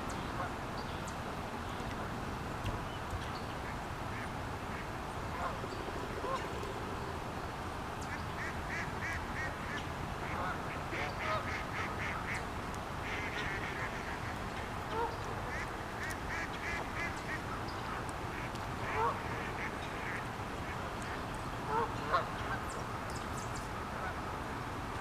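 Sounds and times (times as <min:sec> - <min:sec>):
flowing river water: 0:00.0 - 0:25.0
waterfowl quacking: 0:03.6 - 0:06.8, 0:08.0 - 0:12.4, 0:13.0 - 0:22.7.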